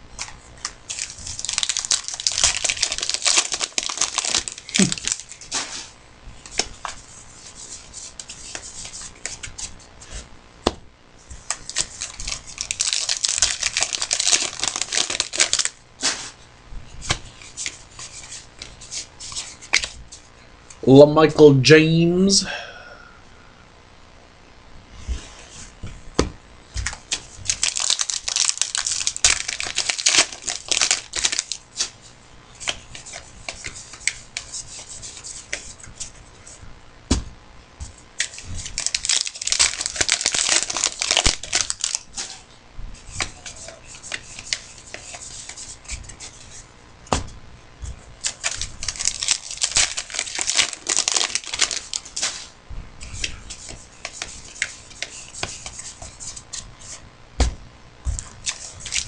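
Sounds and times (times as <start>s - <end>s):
wrappers tearing and crinkling: 0.2s - 5.9s, 11.4s - 16.4s, 26.9s - 32.0s, 38.2s - 42.4s, 48.2s - 55.7s, 58.4s - 59.0s.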